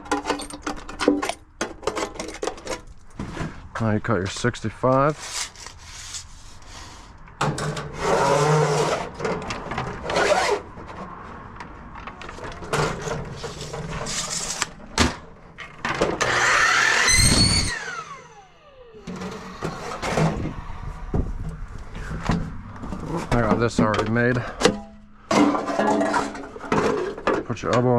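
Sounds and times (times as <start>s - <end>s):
saw cutting metal pipe: 7.9s - 9.2s, 10.0s - 10.7s, 16.2s - 20.7s.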